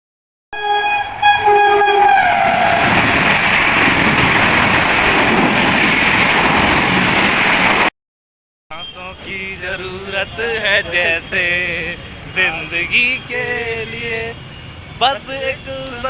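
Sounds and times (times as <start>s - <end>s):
train horn blasts: 0.5s - 3.0s
train rushing by: 0.6s - 7.9s, 9.0s - 16.0s.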